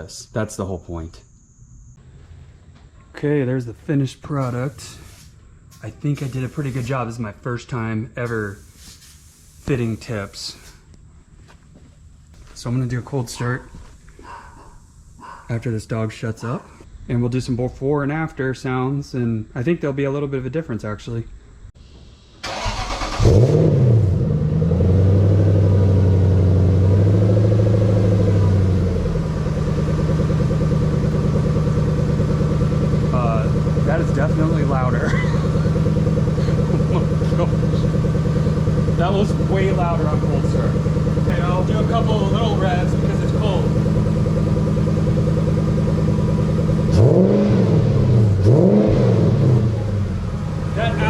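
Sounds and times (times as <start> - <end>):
car engine revving and idling: 22.5 - 51.0.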